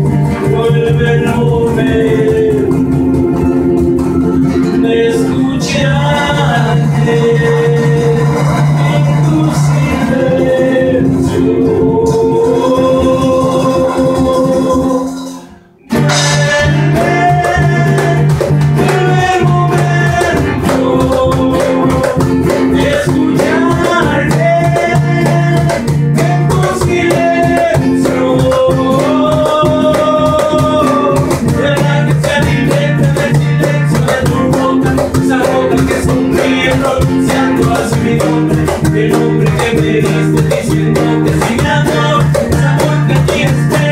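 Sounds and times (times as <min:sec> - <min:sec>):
held melody line: 0:00.0 - 0:43.9
shaker-like percussion: 0:00.0 - 0:43.9
steady bass: 0:00.0 - 0:43.9.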